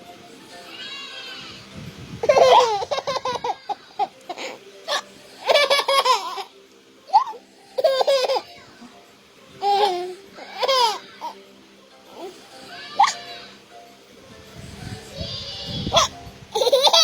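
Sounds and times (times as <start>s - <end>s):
baby laughing: 2.2s - 6.5s, 7.1s - 8.6s, 9.6s - 11.4s, 12.1s - 13.4s, 15.6s - 17.0s.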